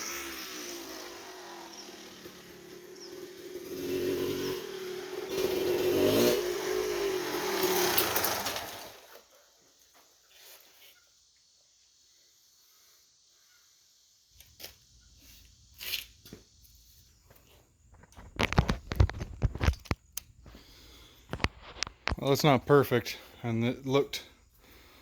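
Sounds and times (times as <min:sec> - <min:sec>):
two-stroke engine running: 0:00.0 - 0:09.1.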